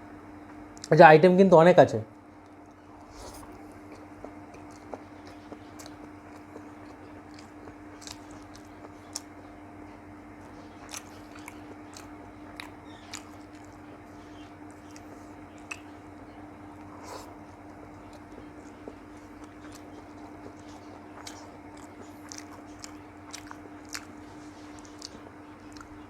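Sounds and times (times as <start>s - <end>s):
steady low hum: 0.0s - 26.0s
person chewing food: 2.3s - 26.0s
mouth clicks and smacks: 2.4s - 9.4s, 14.6s - 16.2s, 16.8s - 26.0s.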